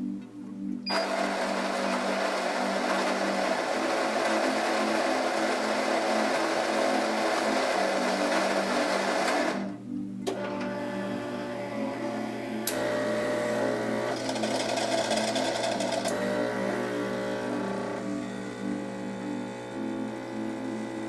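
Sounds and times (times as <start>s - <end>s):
background music: 0.0s - 21.0s
espresso machine running: 0.9s - 9.8s, 10.4s - 21.0s.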